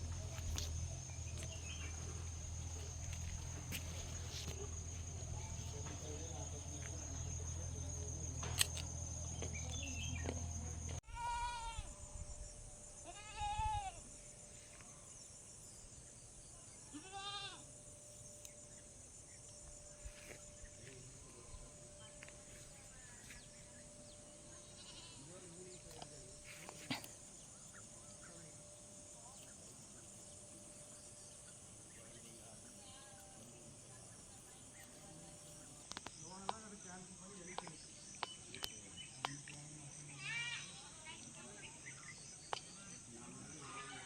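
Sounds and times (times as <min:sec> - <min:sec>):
low steady hum: 0:00.0 - 0:11.1
goat bleating: 0:11.1 - 0:11.8, 0:13.0 - 0:14.0, 0:16.9 - 0:17.6, 0:24.7 - 0:25.3.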